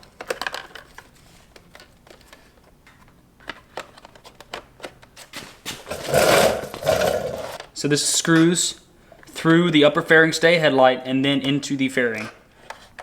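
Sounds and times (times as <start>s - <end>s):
scraping and rustling: 5.2s - 7.6s.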